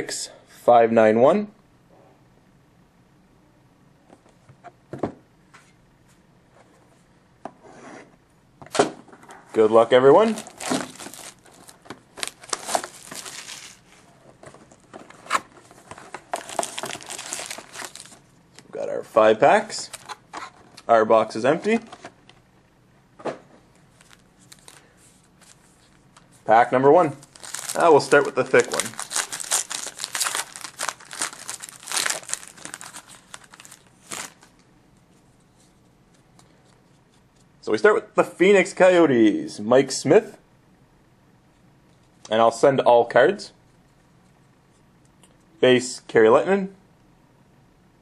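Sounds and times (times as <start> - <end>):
cardboard rustling: 9.6 - 18.3, 23.9 - 26.5, 27.2 - 34.6
foil wrappers crinkling: 10.2 - 14.1, 16.1 - 18.3, 23.9 - 34.6.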